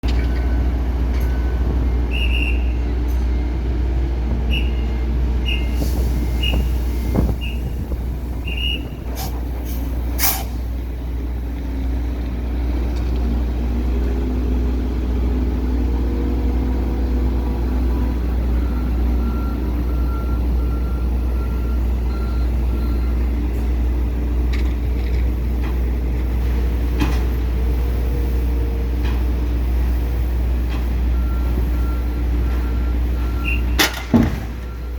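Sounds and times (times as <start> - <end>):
truck reversing alarm beeps: 0.0 - 12.0, 13.5 - 34.9
diesel machinery rumble: 0.0 - 34.9
air brake hiss: 5.6 - 7.1, 9.2 - 10.6
clunks: 24.4 - 27.5, 32.4 - 34.9.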